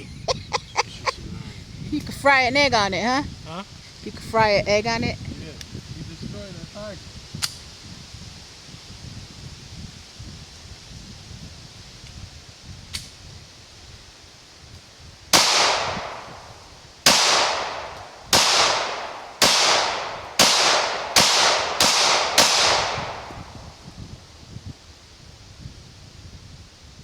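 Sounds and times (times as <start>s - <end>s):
faint click: 7.4s - 7.6s
shotgun shots: 15.4s - 23.9s.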